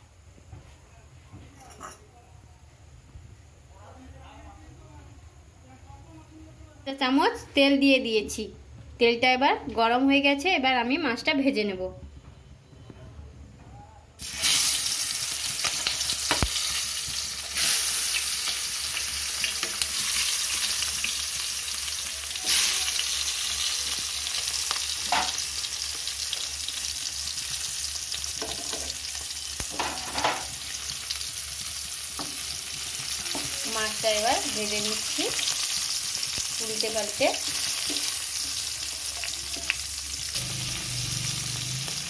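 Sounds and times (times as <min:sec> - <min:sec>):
prawns sizzling in hot oil: 0:14.2 - 0:42.0.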